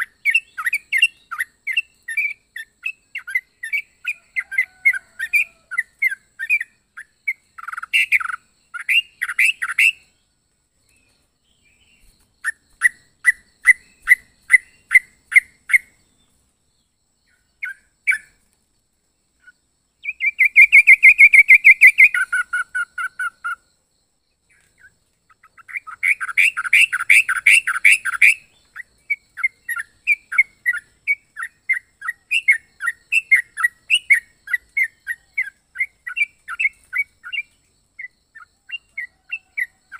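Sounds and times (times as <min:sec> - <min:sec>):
bird chirping and trilling: 0:00.0 - 0:10.2, 0:10.9 - 0:16.3, 0:17.2 - 0:18.5, 0:19.4 - 0:23.6, 0:24.5 - 0:39.9.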